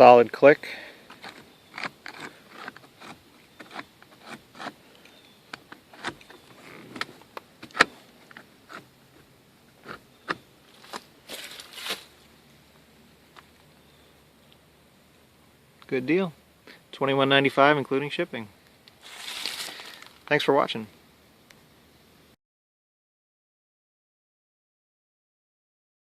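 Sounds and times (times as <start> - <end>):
seat release lever clicks: 5.5 - 8.8
short rustle: 10.7 - 12.2, 19.0 - 20.4.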